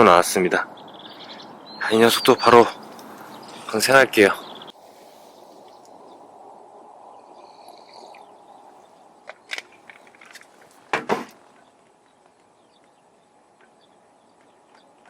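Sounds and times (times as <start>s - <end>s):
wind rushing: 0.7s - 9.3s
handling noise: 9.3s - 12.4s
sharp knocks: 10.9s - 11.4s.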